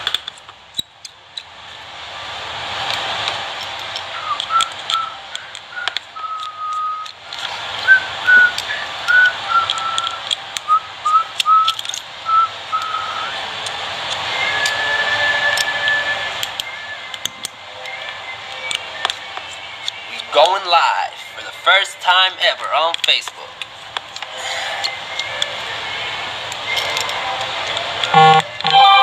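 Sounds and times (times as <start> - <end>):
person whistling a tune: 4.2 - 7.2, 7.8 - 13.4, 14.3 - 18.8, 28.1 - 29.0
light clicks of small parts: 11.4 - 12.1.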